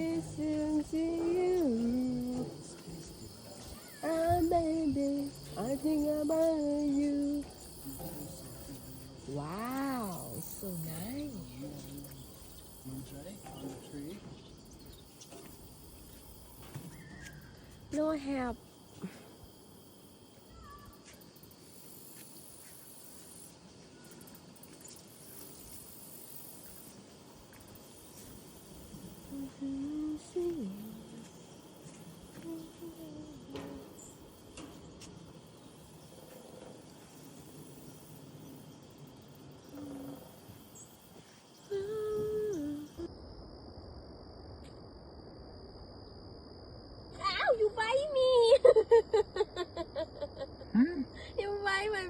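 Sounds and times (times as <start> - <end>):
woman humming: 0.0 - 3.2, 3.8 - 12.4, 29.0 - 31.6, 32.2 - 34.1, 39.6 - 40.6, 41.6 - 43.1
faint chirp: 0.0 - 43.1
outdoor background hiss: 0.0 - 52.0.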